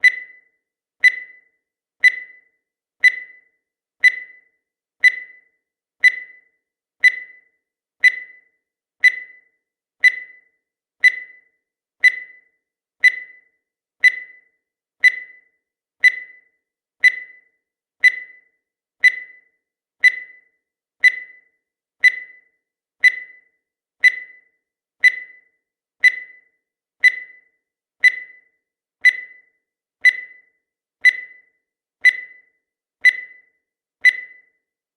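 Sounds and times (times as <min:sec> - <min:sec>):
short timer beeps: 0:00.0 - 0:34.6.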